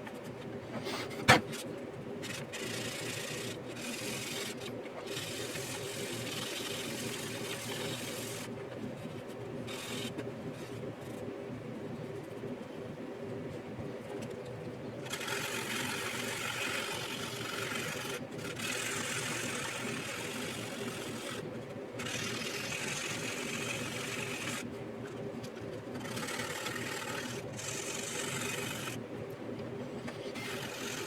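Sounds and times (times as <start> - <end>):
faint steady hum: 0.0 - 31.0
sandpaper rubbing on plastic: 30.3 - 31.0.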